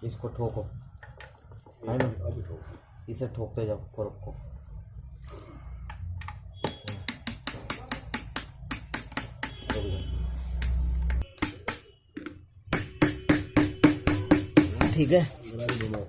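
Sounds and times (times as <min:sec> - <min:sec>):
rapid hammer taps: 0:11.4 - 0:15.0.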